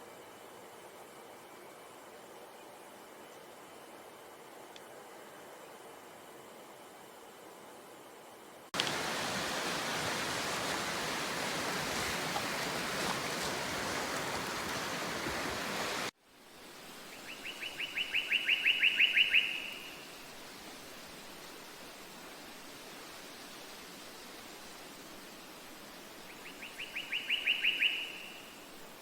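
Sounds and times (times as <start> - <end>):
faint hiss: 0.0 - 29.0
sea waves washing: 8.8 - 16.2
bird singing a trill: 17.3 - 19.9, 26.6 - 28.4.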